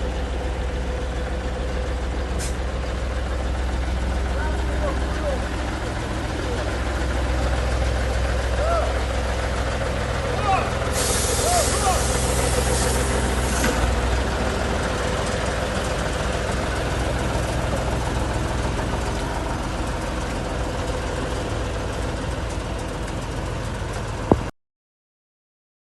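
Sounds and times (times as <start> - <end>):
diesel engine idling: 0.0 - 24.5
air hiss: 10.9 - 13.8.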